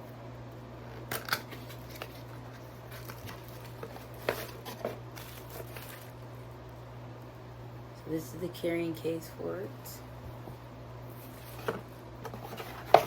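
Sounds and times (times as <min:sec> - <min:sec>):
steady low hum: 0:00.0 - 0:13.0
packaging clicks and crinkles: 0:01.1 - 0:06.2.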